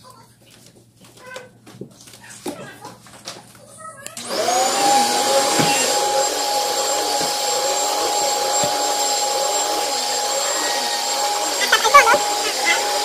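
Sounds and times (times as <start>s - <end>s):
vacuum cleaner motor whining: 4.2s - 13.0s.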